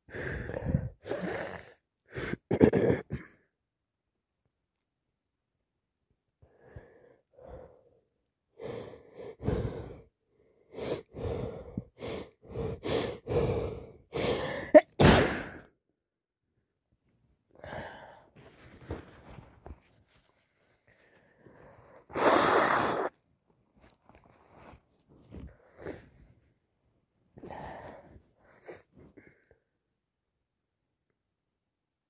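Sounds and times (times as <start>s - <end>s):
woman gasping breaths: 8.6s - 15.7s, 17.6s - 19.4s, 27.4s - 29.6s
woman sneezing: 14.8s - 15.6s.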